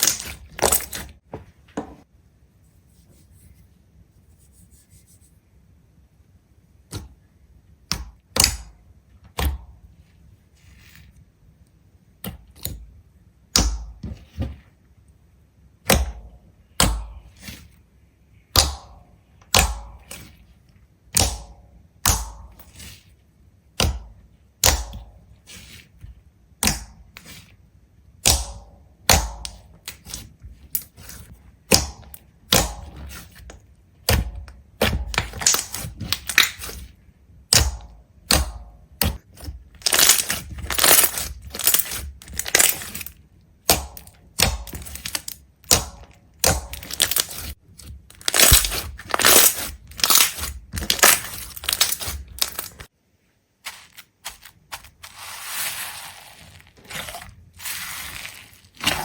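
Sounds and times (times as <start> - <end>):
sharp knocks and cracks: 18.5 - 20.3, 21.1 - 22.7, 23.8 - 25.2, 26.6 - 27.0, 28.2 - 30.9, 31.7 - 36.9, 37.5 - 52.9.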